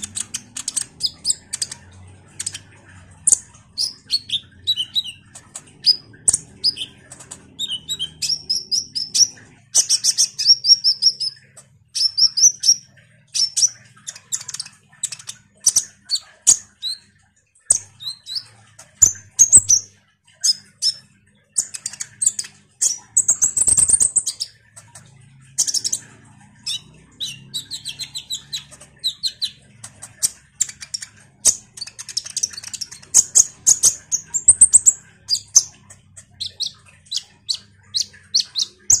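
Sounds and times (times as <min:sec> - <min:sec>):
bird chirping and trilling: 0:00.0 - 0:39.0.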